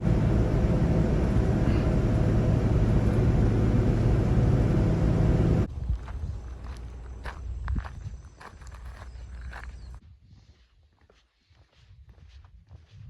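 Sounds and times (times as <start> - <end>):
vehicle engine rumble: 0.0 - 10.0.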